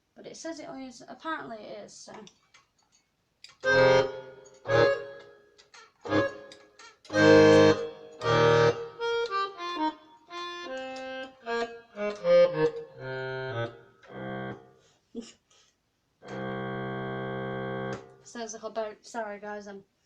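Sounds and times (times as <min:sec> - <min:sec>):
keyboard playing accordion tone: 0:03.6 - 0:14.8, 0:16.2 - 0:18.2.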